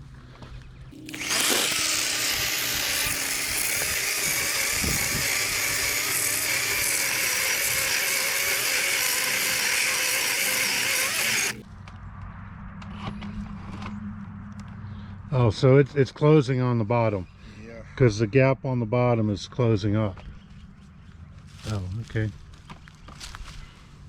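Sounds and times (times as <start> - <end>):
electric chainsaw cutting log: 0.9 - 11.6.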